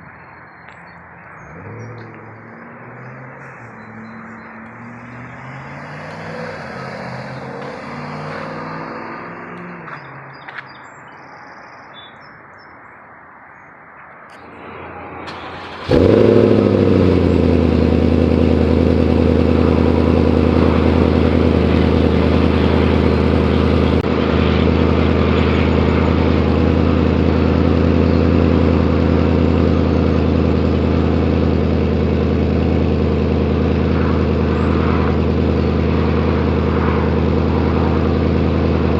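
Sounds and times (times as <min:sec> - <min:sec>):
car engine idling: 0:14.4 - 0:38.9.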